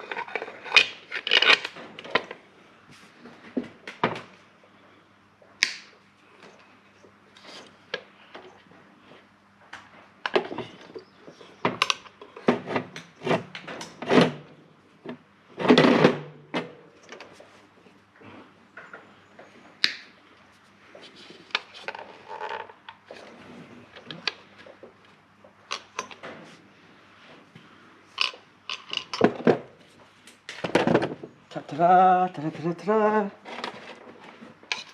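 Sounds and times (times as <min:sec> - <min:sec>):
tools clicking and knocking: 0:25.7 - 0:26.3, 0:28.2 - 0:29.6.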